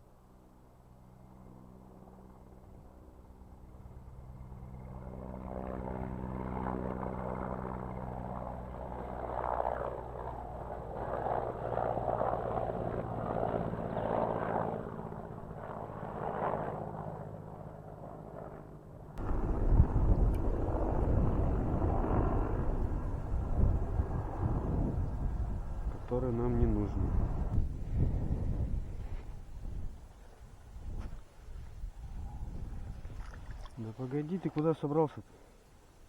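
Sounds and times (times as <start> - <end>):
passing motor engine hum: 19.2 - 30.3.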